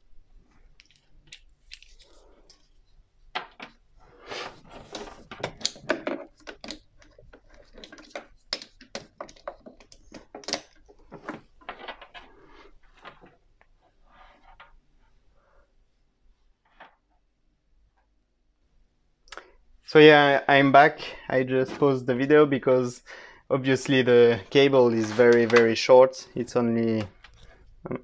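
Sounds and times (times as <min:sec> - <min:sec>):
plastic items clicking and knocking: 0:04.7 - 0:13.4.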